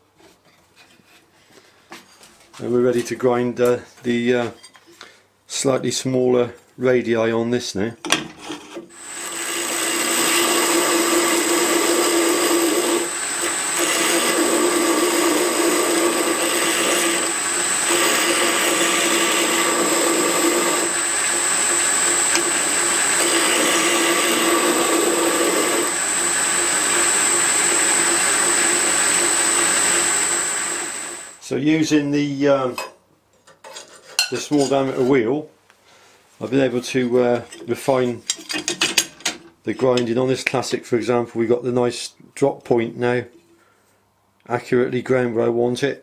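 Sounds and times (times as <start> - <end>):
steel grinding against wheel: 8.5 - 31.3
belt grinder whining: 8.9 - 31.4.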